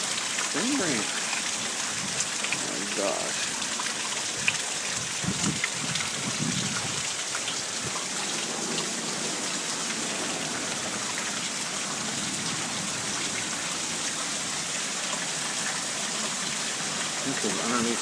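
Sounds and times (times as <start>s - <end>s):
steady hard rain: 0.0s - 18.0s.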